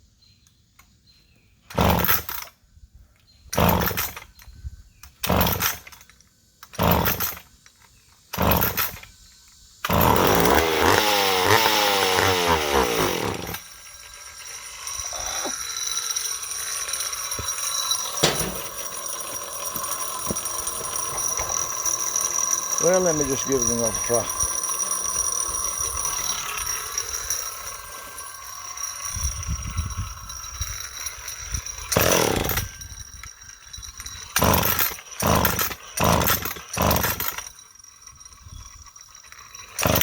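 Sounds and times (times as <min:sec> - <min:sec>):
chainsaw starter rope pulls: 0:01.6 - 0:02.6, 0:03.5 - 0:40.0
chainsaw engine revving: 0:01.7 - 0:02.4, 0:03.5 - 0:04.3, 0:05.2 - 0:06.0, 0:06.7 - 0:07.5, 0:08.3 - 0:09.0, 0:09.8 - 0:33.0, 0:34.0 - 0:37.6, 0:39.5 - 0:40.0.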